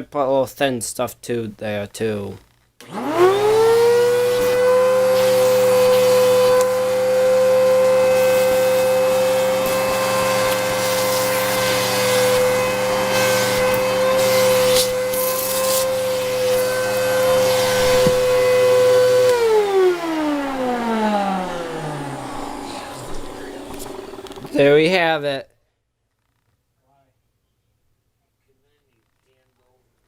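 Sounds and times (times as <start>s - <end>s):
vacuum motor winding down: 2.8s - 24.8s
vacuum cleaner motor whining: 2.8s - 24.9s.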